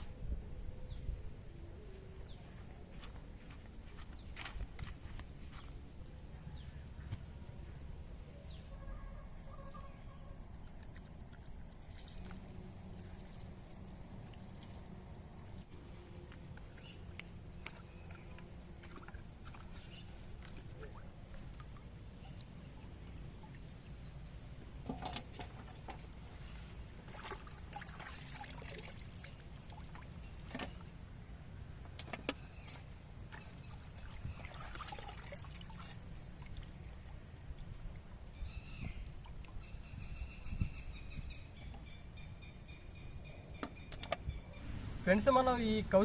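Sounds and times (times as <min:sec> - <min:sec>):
water sloshing and dribbling: 0:09.3 - 0:31.0, 0:31.9 - 0:40.0.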